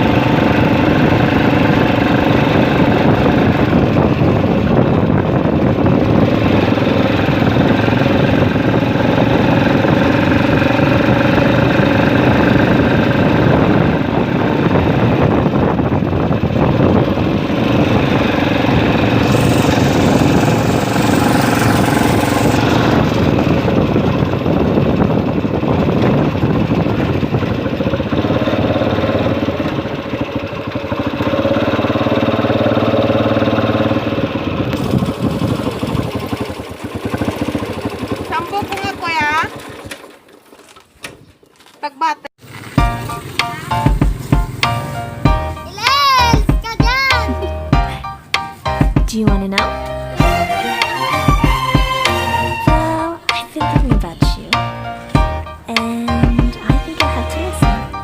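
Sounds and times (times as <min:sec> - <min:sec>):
motorcycle engine running: 0:00.0 - 0:40.4, 0:42.4 - 0:58.0
rising hiss: 0:18.6 - 0:23.0.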